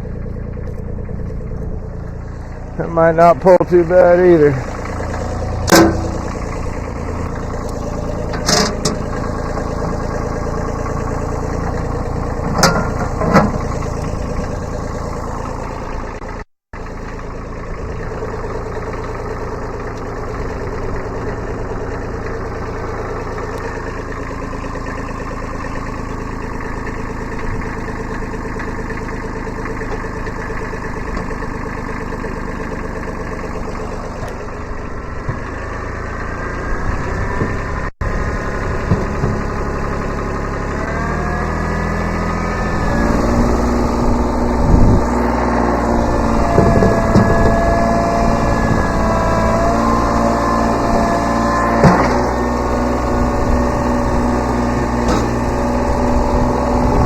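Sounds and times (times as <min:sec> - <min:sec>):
diesel tractor engine running: 0:00.0 - 0:57.0
sharp knocks: 0:05.6 - 0:06.7.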